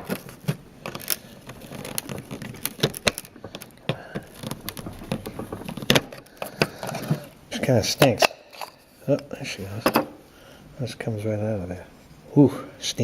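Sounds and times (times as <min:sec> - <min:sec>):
plastic parts clicking: 0:00.0 - 0:07.4.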